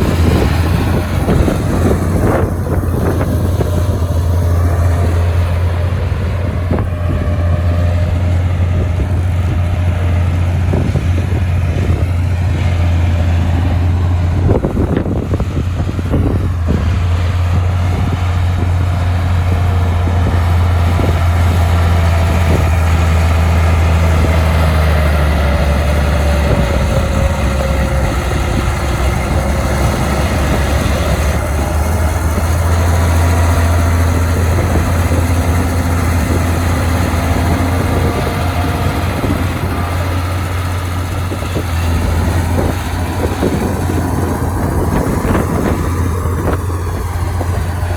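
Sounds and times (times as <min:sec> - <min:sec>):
heavy diesel engine droning: 0:00.0 - 0:47.9.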